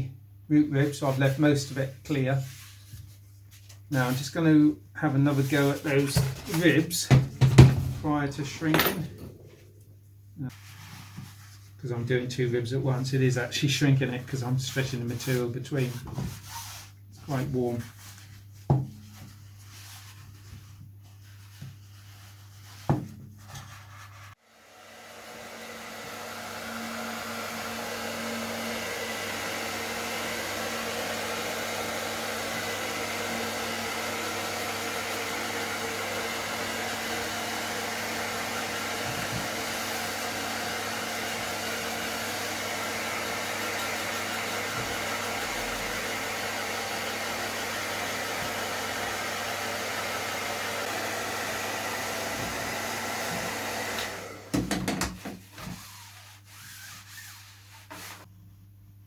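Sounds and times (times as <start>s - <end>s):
heat gun blowing: 24.6s - 54.7s.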